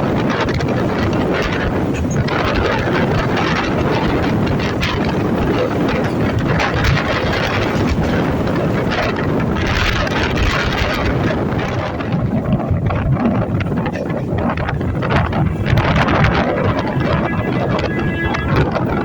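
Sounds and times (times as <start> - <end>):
wind buffeting microphone: 0.0 - 19.0
train passing at speed: 14.7 - 19.0.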